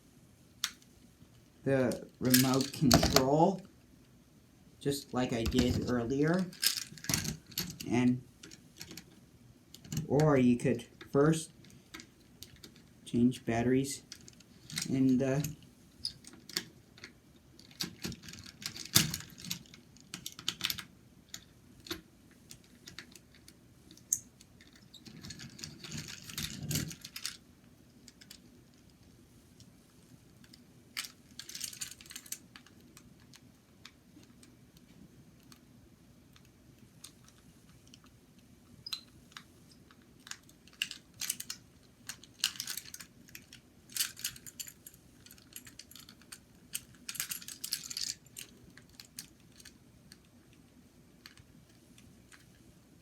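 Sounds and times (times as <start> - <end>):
toy train plastic clicks and rattles: 1.9 - 3.3, 5.4 - 10.3, 14.1 - 27.4, 28.0 - 29.1, 30.4 - 35.7, 38.9 - 50.4.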